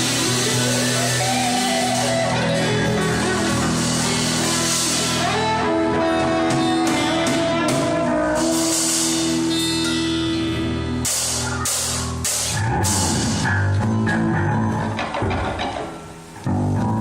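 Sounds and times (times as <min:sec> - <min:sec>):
guitar long held notes: 0:00.0 - 0:17.0
cymbal strokes: 0:06.8 - 0:13.5.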